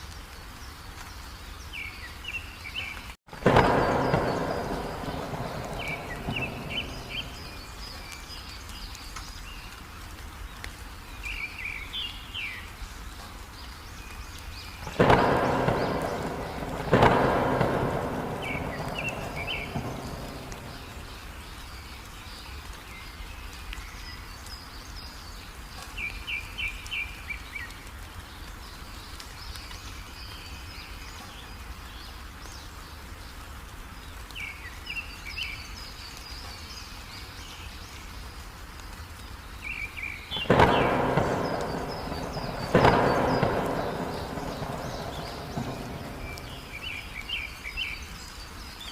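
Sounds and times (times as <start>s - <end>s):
heavy rain: 0.0s - 48.9s
songbird chirping: 0.0s - 48.9s
thunder claps rumbling: 3.3s - 8.2s, 14.8s - 21.6s, 40.3s - 47.6s.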